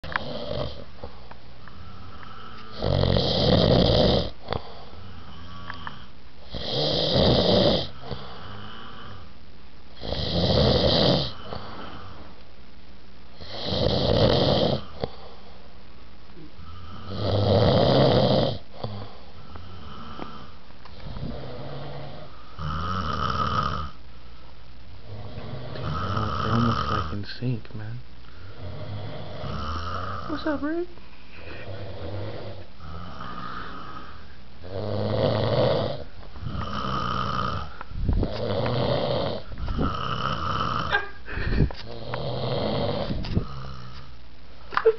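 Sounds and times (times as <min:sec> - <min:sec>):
person snoring: 0:00.0 - 0:00.9, 0:01.8 - 0:09.3, 0:10.0 - 0:12.3, 0:13.4 - 0:15.4, 0:16.5 - 0:24.0, 0:25.0 - 0:27.2, 0:28.4 - 0:30.4, 0:31.4 - 0:44.1.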